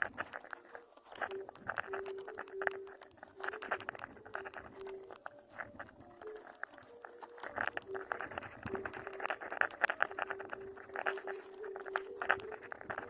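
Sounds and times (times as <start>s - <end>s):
birds scratching in nest: 0.0s - 13.0s
faint steady tone: 0.0s - 13.0s.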